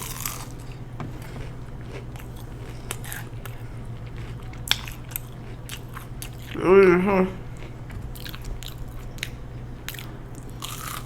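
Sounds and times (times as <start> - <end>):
crunchy chewing: 0.0 - 11.0.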